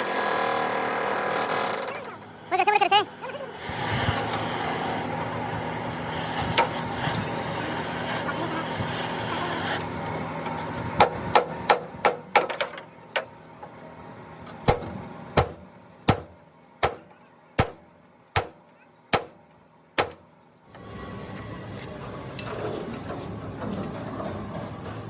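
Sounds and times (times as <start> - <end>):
hammer striking metal bodywork: 14.6 - 19.4, 20.0 - 20.3.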